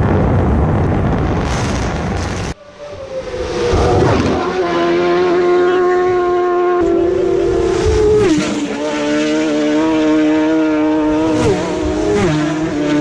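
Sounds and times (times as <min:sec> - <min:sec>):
racing car engine revving high: 0:02.6 - 0:13.0.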